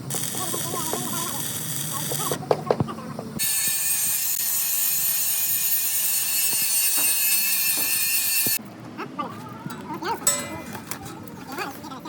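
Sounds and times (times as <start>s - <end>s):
angle grinder on steel: 0.0s - 2.4s, 3.4s - 8.6s
sharp metal taps: 10.3s - 11.0s.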